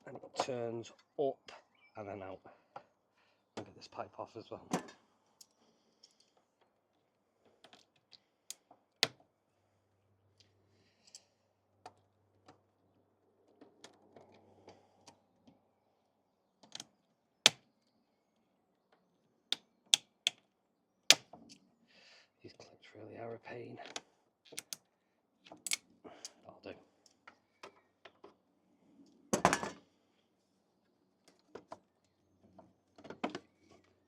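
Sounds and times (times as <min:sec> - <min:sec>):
plastic clicks of hose clips: 0:23.9 - 0:24.9.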